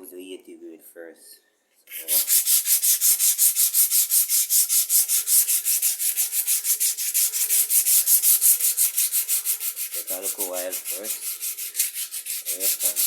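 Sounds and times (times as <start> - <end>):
sandpaper sanding wood: 1.9 - 13.0.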